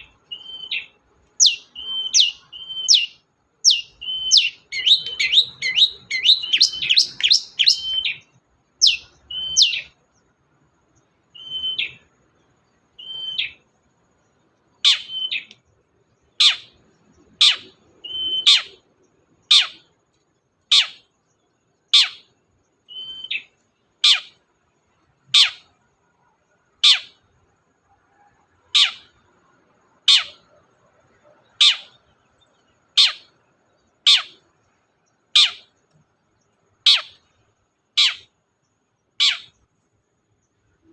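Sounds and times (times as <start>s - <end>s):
shrike calling: 0.0s - 10.0s, 11.3s - 12.1s, 13.0s - 13.7s, 14.8s - 15.6s, 16.3s - 19.9s, 21.9s - 22.3s, 22.9s - 24.4s, 25.3s - 25.7s, 28.6s - 29.2s, 30.0s - 34.5s, 35.3s - 35.8s, 36.8s - 37.3s, 37.9s - 38.4s, 39.1s - 39.6s.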